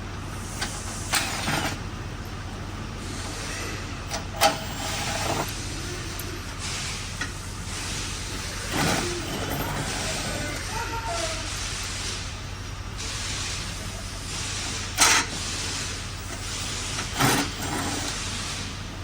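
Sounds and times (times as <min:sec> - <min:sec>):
steady low hum: 0:00.0 - 0:19.0
tool rasping bursts: 0:14.5 - 0:18.7.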